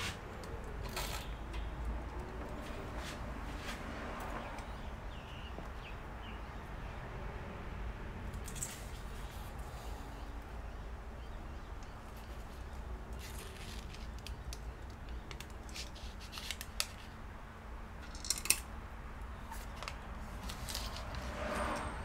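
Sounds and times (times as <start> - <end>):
clicking and scraping at bench: 19.5 - 22.0.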